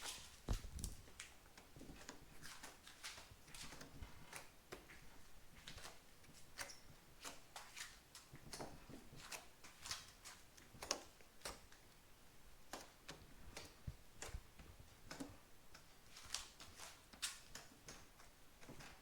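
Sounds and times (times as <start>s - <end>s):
faint light clicks and taps: 12.7s - 19.0s.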